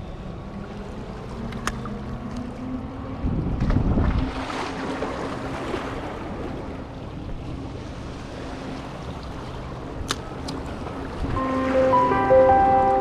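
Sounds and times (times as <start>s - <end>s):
wind buffeting microphone: 0.0s - 4.9s.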